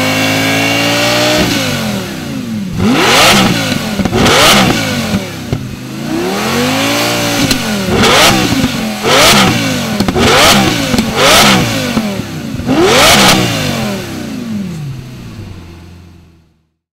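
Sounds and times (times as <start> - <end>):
sports car engine revving: 0.0 - 16.8.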